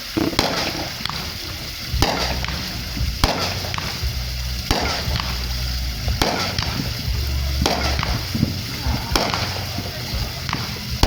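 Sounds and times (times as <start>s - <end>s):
fireworks bangs: 0.0s - 11.0s
fireworks crackles: 0.0s - 11.0s
low rumble: 0.0s - 11.0s.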